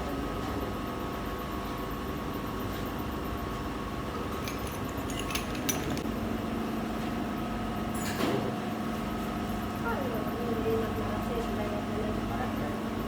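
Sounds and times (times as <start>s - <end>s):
workshop machinery hum: 0.0s - 13.0s
light metallic clinks: 4.3s - 6.0s.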